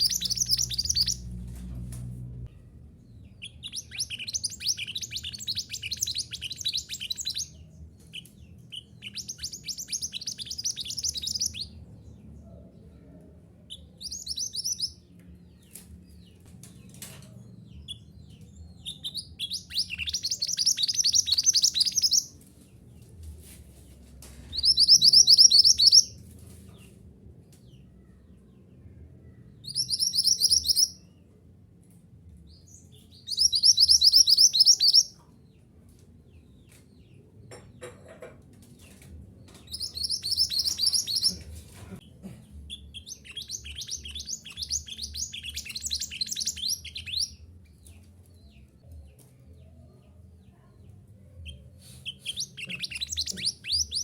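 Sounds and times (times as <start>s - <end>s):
bird rapid high chirps: 0.0s - 1.4s, 3.2s - 11.8s, 13.7s - 15.0s, 18.8s - 22.4s, 24.5s - 26.2s, 29.6s - 31.0s, 33.0s - 35.2s, 39.6s - 41.4s, 42.7s - 47.4s, 51.4s - 54.0s.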